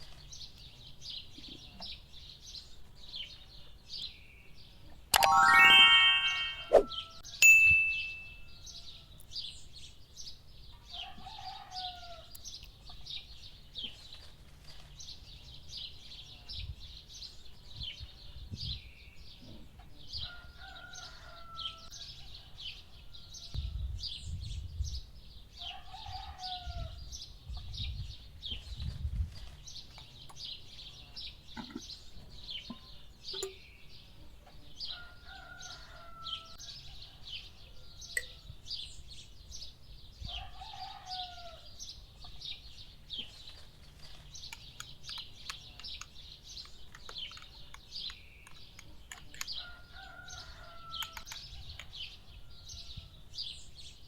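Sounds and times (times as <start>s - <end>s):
small birds chirping: 23.6s - 54.0s.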